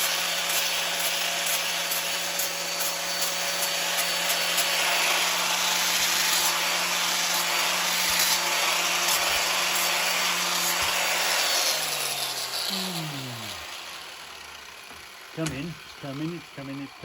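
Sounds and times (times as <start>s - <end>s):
electric grinder grinding steel: 0.0s - 17.0s
grinder spinning down: 0.0s - 17.0s.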